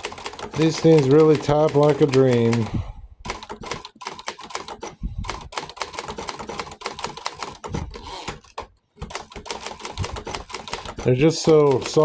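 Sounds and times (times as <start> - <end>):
manual typewriter keystrokes: 0.0 - 12.0
heavier typewriter thumps: 5.4 - 12.0.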